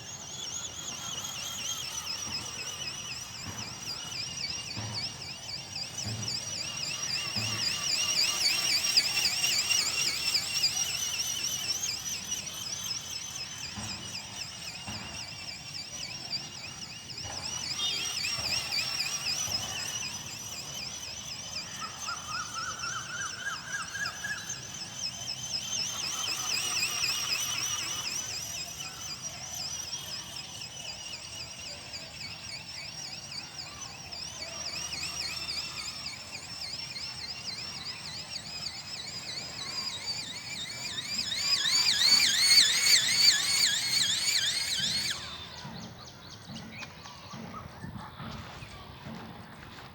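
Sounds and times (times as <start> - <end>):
warbling motor whine: 0.0 - 49.9.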